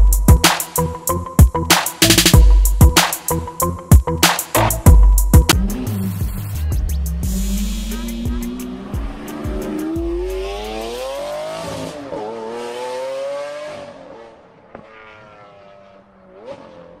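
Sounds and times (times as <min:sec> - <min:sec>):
car engine revving: 0:05.4 - 0:17.0.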